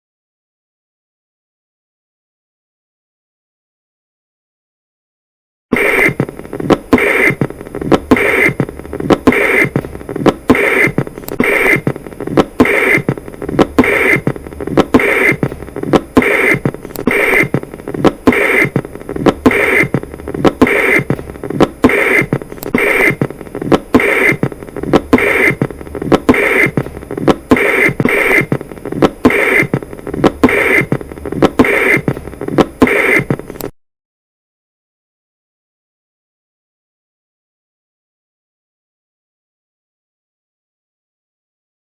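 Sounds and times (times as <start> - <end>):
heartbeat: 5.8 - 33.7
continuous whooshing heart murmur: 6.0 - 33.6.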